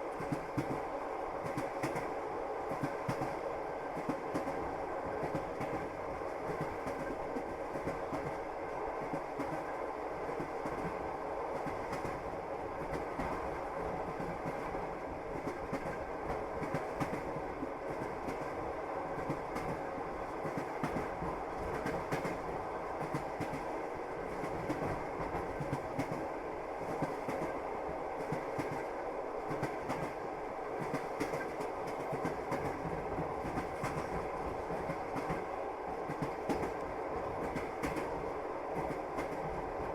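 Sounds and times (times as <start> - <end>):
train carriage rumble: 0.0 - 39.9.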